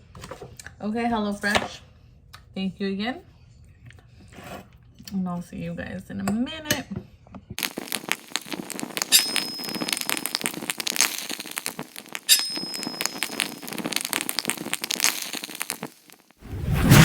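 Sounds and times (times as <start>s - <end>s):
sharp snaps: 7.6s - 16.3s
thin high tone: 7.6s - 16.3s
dense crackling clicks: 7.6s - 16.4s.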